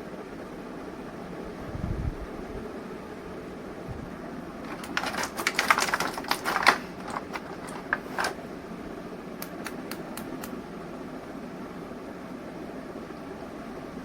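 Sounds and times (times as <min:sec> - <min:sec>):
plastic packaging crinkling: 0:04.6 - 0:08.4
sharp plastic clicks: 0:04.6 - 0:08.4, 0:09.4 - 0:10.6.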